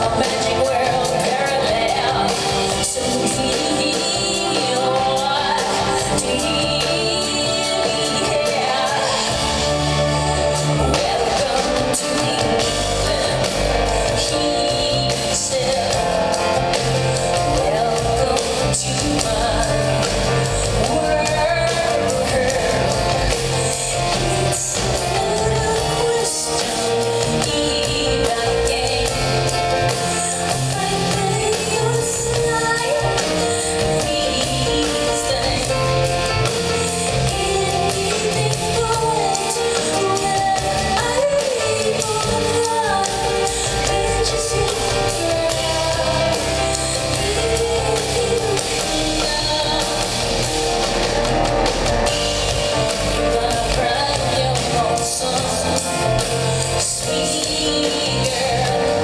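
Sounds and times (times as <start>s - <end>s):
bass guitar: 0.0s - 59.0s
drums: 0.0s - 59.0s
woman singing: 0.0s - 59.0s.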